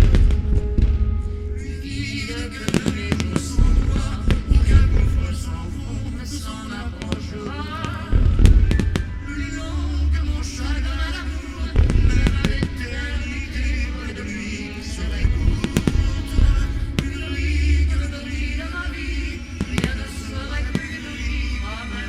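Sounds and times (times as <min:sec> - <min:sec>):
music with singing and heavy bass: 0:00.0 - 0:22.0
fireworks bangs: 0:02.7 - 0:18.2, 0:19.4 - 0:21.3.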